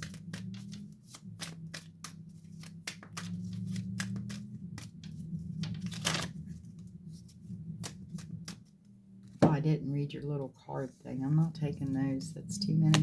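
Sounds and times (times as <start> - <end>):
cards being shuffled: 0.0 - 8.9, 11.8 - 13.0
low hum: 0.0 - 13.0.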